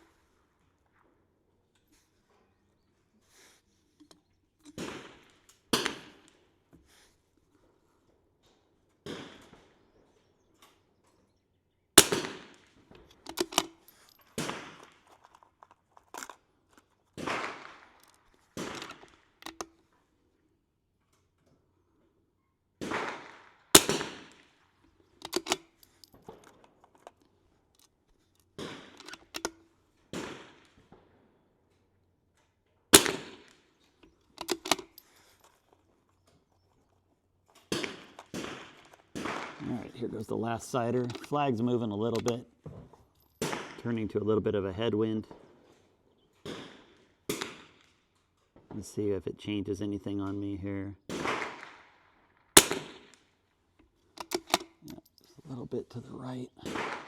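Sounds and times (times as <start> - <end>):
rifle shots: 4.7 - 6.4, 12.0 - 13.8, 14.4 - 15.0, 17.2 - 18.0, 18.6 - 19.6, 22.8 - 24.6, 28.6 - 29.5, 30.1 - 31.1, 32.9 - 33.7, 37.7 - 42.4, 43.4 - 44.4, 46.4 - 48.0, 51.1 - 53.4, 56.6 - 57.0
rifle handling clicks: 12.0 - 19.8, 23.7 - 24.5, 25.1 - 29.7, 32.4 - 36.4, 40.9 - 42.4, 52.6 - 55.4.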